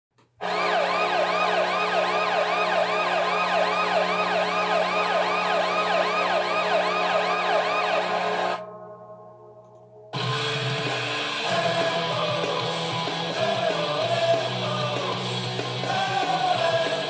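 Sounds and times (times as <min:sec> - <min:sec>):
siren yelping up and down: 0:00.4 - 0:08.7.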